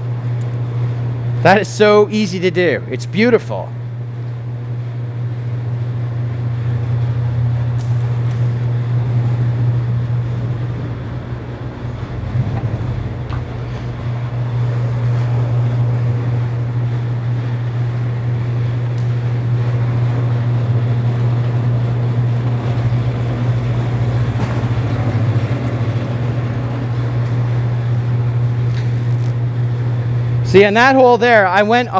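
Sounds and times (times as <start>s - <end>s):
wire stripping machine humming: 0.0s - 30.7s.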